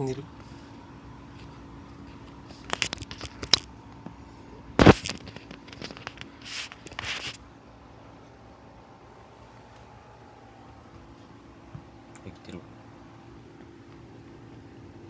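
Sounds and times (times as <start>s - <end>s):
rustling and handling noise: 0.0s - 7.6s
quick clicks and scrapes: 4.8s - 7.4s.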